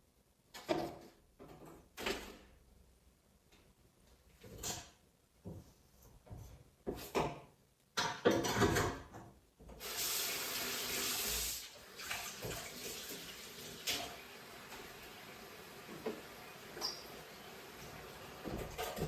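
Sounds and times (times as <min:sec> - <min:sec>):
tap water running into sink: 0:09.7 - 0:19.0.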